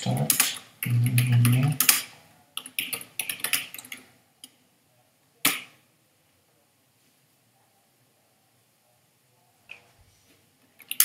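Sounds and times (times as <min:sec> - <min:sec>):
computer keyboard typing: 0:00.0 - 0:02.0, 0:02.6 - 0:04.0.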